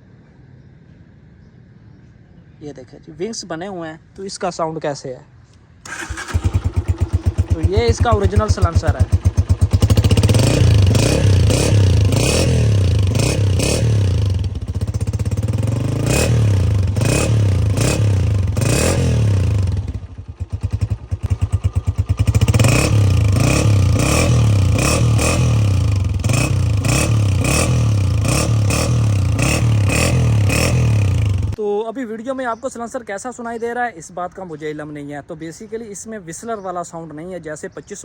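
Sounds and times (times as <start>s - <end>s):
motorcycle engine revving: 5.8s - 31.6s.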